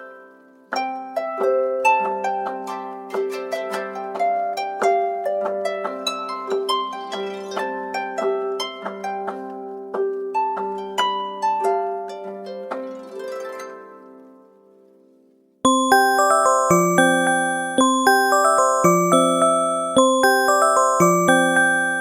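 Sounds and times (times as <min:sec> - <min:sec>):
harp-like alarm ringtone: 0:15.7 - 0:22.0.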